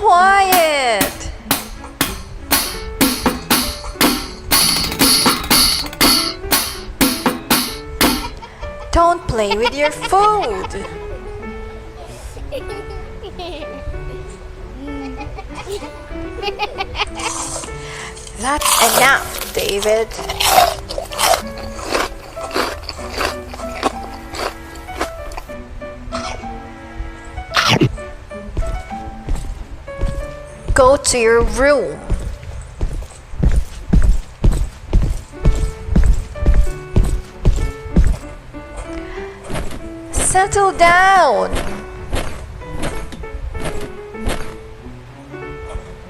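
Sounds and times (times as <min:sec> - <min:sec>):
music: 0:00.0 - 0:46.0
drum beat: 0:00.5 - 0:08.4, 0:33.4 - 0:38.2.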